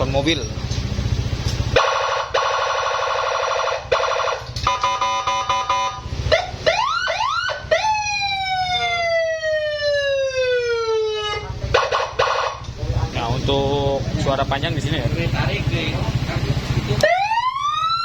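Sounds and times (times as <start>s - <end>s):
electronic siren tones: 17.0s - 18.0s.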